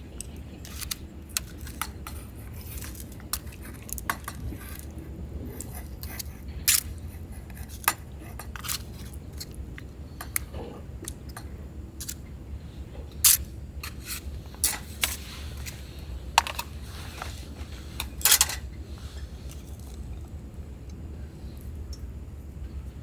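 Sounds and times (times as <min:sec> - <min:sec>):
low background hum: 0:00.0 - 0:23.0
metal cookware clinking: 0:14.6 - 0:15.2, 0:18.0 - 0:18.7.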